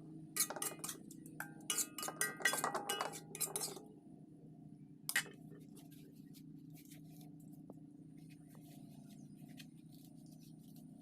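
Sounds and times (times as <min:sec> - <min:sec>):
steady low hum: 0:00.0 - 0:11.0
kitchen utensils and dishes clinking: 0:00.4 - 0:03.8, 0:05.1 - 0:05.3.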